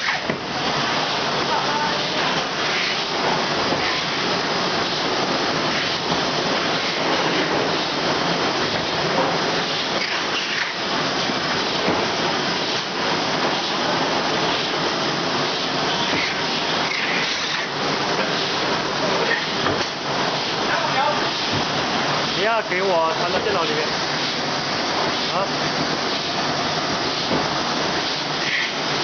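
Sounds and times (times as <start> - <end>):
filling machine running with clicks: 0.0 - 29.0.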